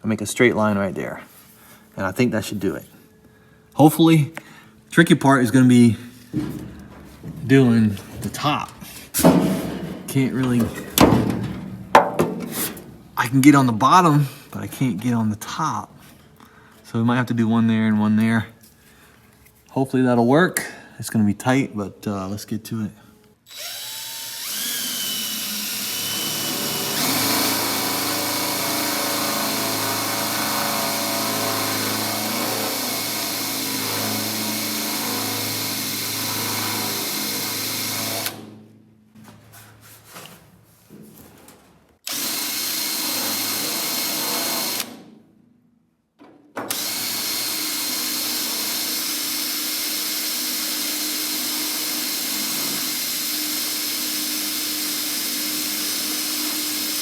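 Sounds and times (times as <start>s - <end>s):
electric drill drilling steel: 23.5s - 38.6s, 42.1s - 45.0s, 46.7s - 57.0s.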